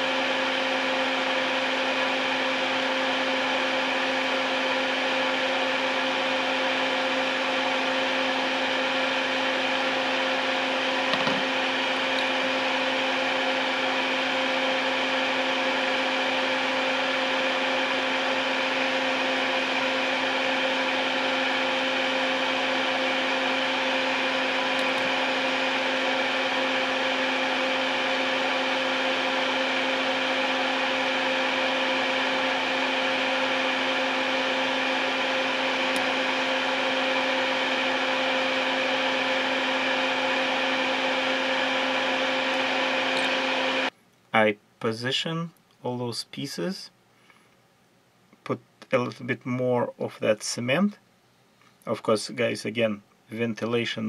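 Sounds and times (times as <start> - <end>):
electric fan running: 0.0 - 44.0
small knock: 11.1 - 11.4.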